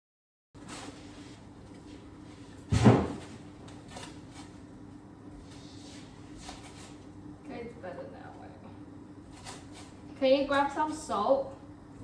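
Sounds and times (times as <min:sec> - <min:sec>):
loud thump: 0:02.7 - 0:03.2.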